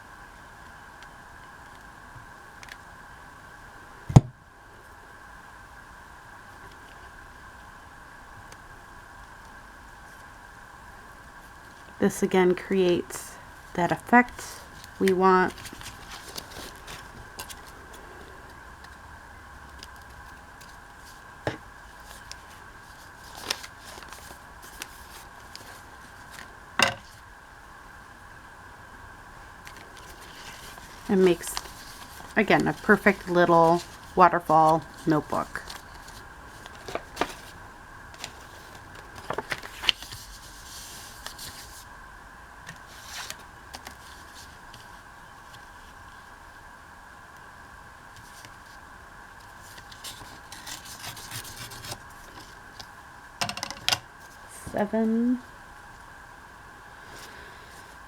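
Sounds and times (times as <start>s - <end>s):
faint steady hum: 0.0s - 58.0s
paper rustle: 14.2s - 19.0s, 21.8s - 27.2s, 29.6s - 41.9s, 42.7s - 46.2s, 49.4s - 52.9s.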